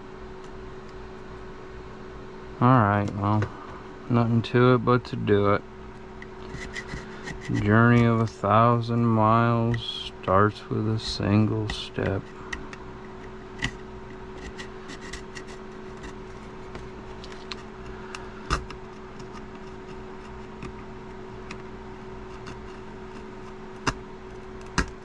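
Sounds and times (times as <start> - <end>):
steady low hum: 0.0 - 25.0
hand tool scraping and clicking: 6.4 - 8.3, 14.4 - 20.9, 22.2 - 25.0.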